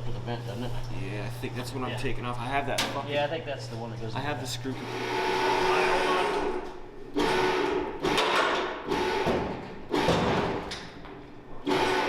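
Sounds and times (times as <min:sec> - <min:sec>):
power tool whirring: 0:04.8 - 0:10.4, 0:11.6 - 0:12.0.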